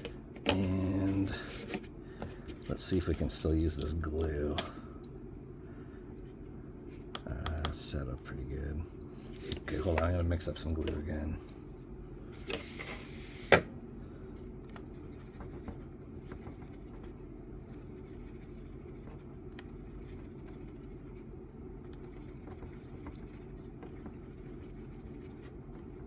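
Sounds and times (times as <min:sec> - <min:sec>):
steady low hum: 0:00.0 - 0:26.0
epoxy being mixed by hand: 0:14.4 - 0:26.0.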